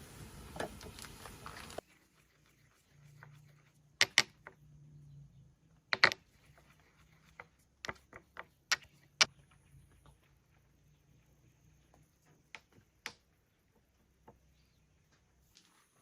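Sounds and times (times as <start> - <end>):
sharp knocks and clicks: 4.0 - 4.6.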